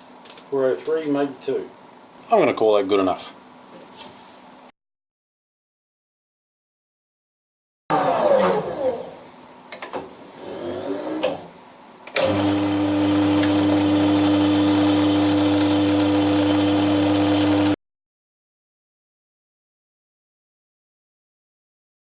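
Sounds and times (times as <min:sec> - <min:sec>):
electric motor whine and hum: 0:10.3 - 0:11.5, 0:12.2 - 0:17.8.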